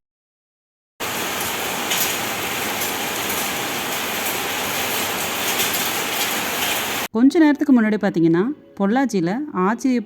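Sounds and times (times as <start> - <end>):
hailstones tapping on roof: 1.0 - 7.1
heavy rain hissing: 1.0 - 7.1.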